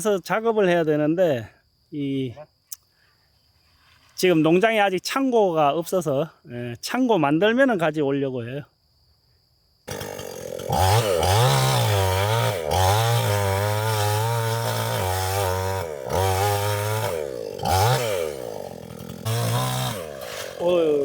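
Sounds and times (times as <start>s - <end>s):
chainsaw cutting wood: 9.9s - 21.0s.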